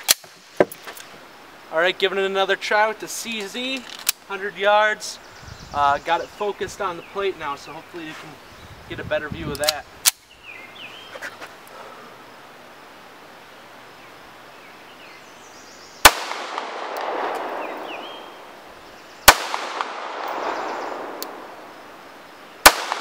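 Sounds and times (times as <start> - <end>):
pistol shots with rolling echo: 16.0 - 18.3, 19.2 - 21.6, 22.6 - 23.0.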